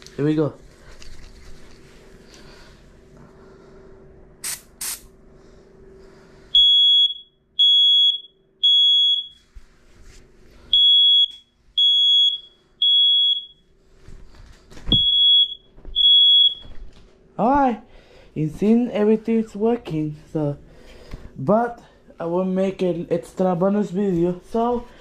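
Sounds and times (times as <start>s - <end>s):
aerosol spray hissing: 4.4s - 5.1s
smoke alarm beeping: 6.5s - 9.5s, 10.7s - 13.7s, 14.8s - 16.9s.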